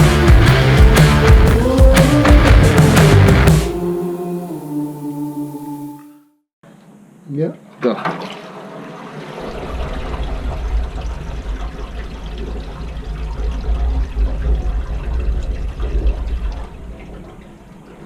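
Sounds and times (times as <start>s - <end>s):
water rushing down drain: 8.0s - 18.0s.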